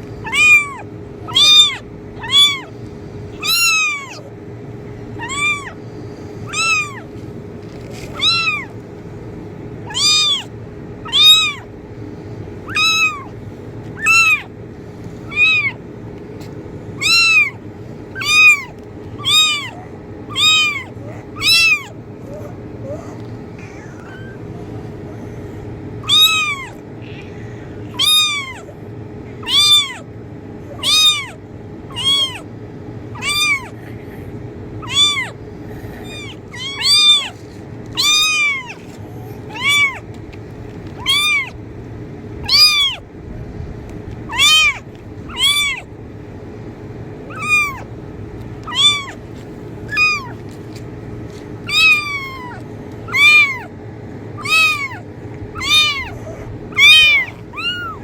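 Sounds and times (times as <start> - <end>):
low background hum: 0.0 - 58.0
kitten meowing: 0.2 - 2.8, 3.4 - 4.3, 5.1 - 5.8, 6.4 - 7.2, 7.9 - 8.8, 9.8 - 11.7, 12.6 - 14.5, 15.2 - 15.8, 17.0 - 24.5, 26.0 - 28.7, 29.4 - 30.1, 30.7 - 32.5, 33.2 - 33.8, 34.8 - 40.1, 41.0 - 41.6, 42.4 - 43.1, 44.3 - 45.9, 47.3 - 47.9, 48.6 - 50.5, 51.6 - 53.7, 54.4 - 58.0.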